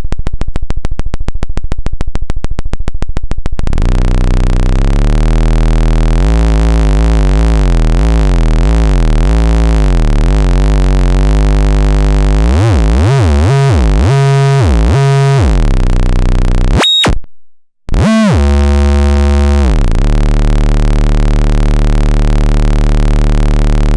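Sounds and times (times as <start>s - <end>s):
wobbling synth tone: 12.3s - 15.9s.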